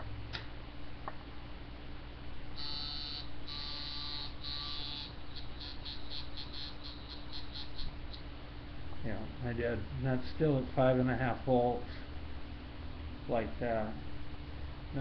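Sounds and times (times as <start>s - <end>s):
tattoo machine buzzing: 2.6s - 8.2s.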